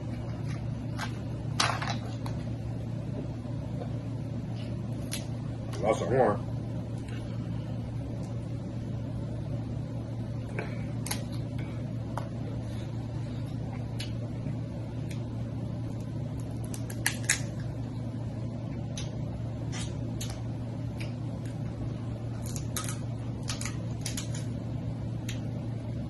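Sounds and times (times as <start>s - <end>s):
low hum: 0.0s - 26.0s
crab shells cracking by hand: 16.0s - 17.7s, 22.4s - 24.6s.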